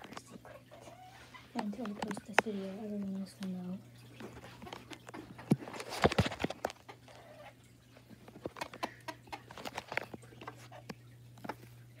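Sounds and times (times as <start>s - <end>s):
taps and knocks handling chicken: 8.3s - 10.6s.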